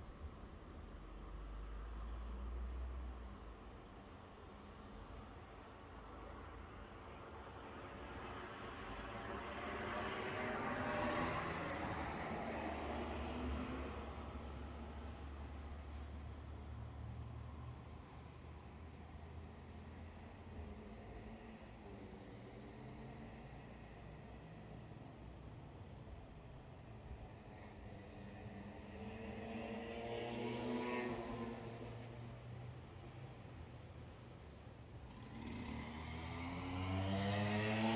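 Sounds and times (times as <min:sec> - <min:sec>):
crickets chirping: 0:00.0 - 0:09.1, 0:10.0 - 0:37.9
distant road traffic: 0:00.1 - 0:37.9
vehicle passing: 0:09.6 - 0:15.0, 0:28.6 - 0:33.4, 0:34.8 - 0:37.9.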